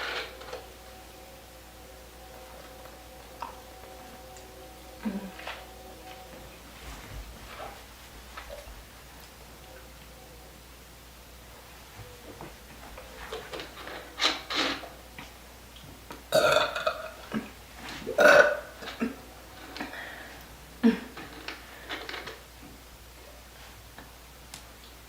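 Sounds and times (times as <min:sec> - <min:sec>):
girl burping: 0:16.3 - 0:17.5, 0:18.1 - 0:19.2.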